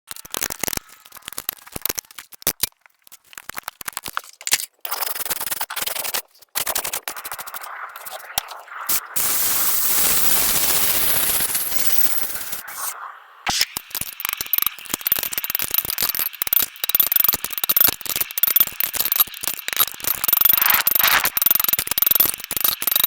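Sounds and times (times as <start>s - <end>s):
tools clicking and scraping hoof: 0.1s - 23.0s
loud grinding: 8.9s - 12.9s.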